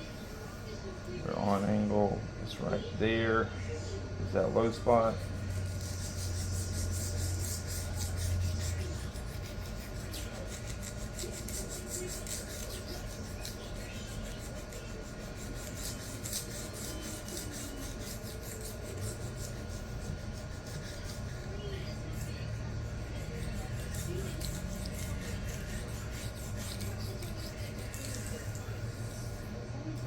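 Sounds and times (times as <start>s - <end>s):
knife scraping on sharpening stone: 15.6s - 19.8s.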